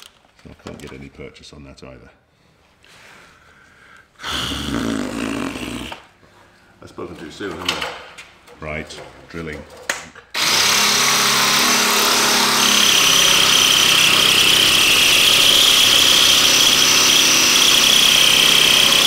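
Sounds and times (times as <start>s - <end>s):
electric drill drilling: 10.4s - 19.0s.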